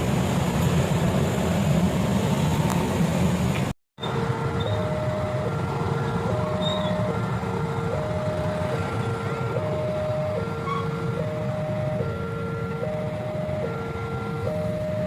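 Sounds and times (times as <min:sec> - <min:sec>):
level crossing two-tone alarm: 0:04.0 - 0:15.0.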